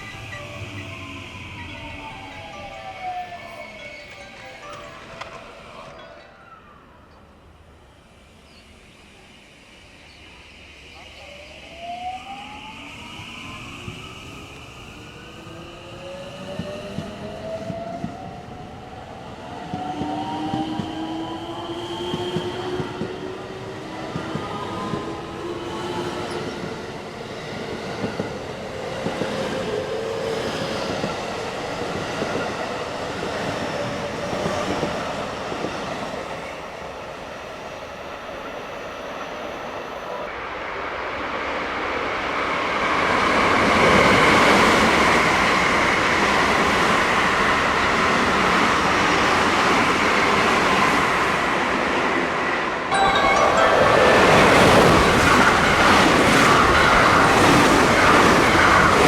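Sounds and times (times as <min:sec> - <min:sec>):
train whine: 0:00.0 - 0:59.0
train wheels rushing on rails: 0:08.3 - 0:37.8.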